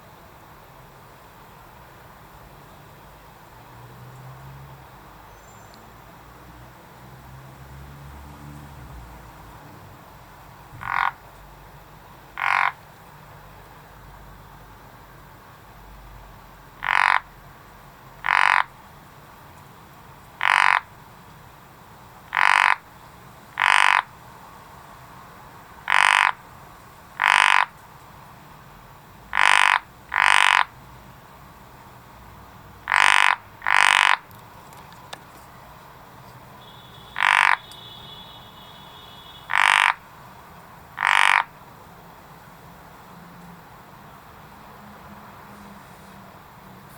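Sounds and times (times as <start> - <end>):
frog croaking: 10.7 - 11.4, 12.2 - 13.0, 16.6 - 17.5, 18.1 - 18.9, 20.4 - 21.0, 22.2 - 24.2, 25.8 - 27.8, 29.3 - 30.8, 32.8 - 34.4, 36.6 - 41.6.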